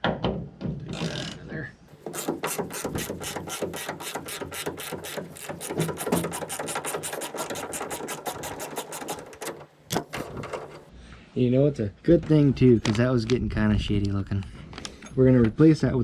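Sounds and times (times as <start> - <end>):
hand ratchet clicking: 1.9 - 9.7.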